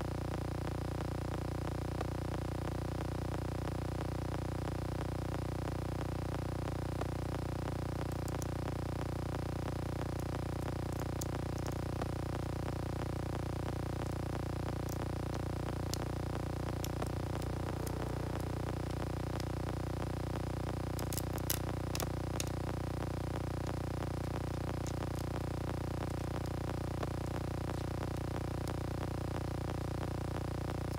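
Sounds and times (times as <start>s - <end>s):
electrical hum: 0.0s - 30.9s
small sharp clicks and taps: 23.6s - 25.4s.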